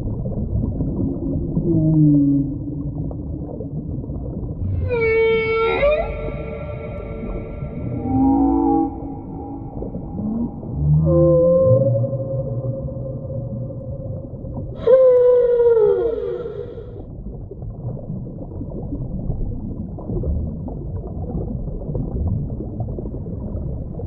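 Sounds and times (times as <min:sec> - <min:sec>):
whale calls: 0:04.6 - 0:17.1.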